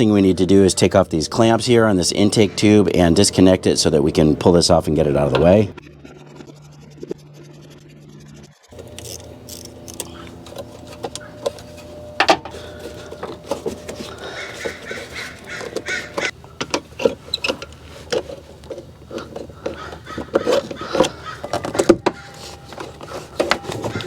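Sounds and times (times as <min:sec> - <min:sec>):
bird calling: 0:01.4 - 0:05.6, 0:08.8 - 0:24.0
hand tools clicking on hose clamps: 0:08.8 - 0:24.0.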